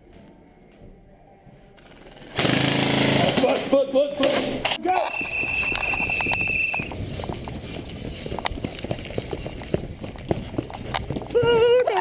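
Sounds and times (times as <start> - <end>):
hurried footsteps: 4.2 - 12.0
steady high beep: 5.1 - 6.9
gear rattling: 5.5 - 12.0.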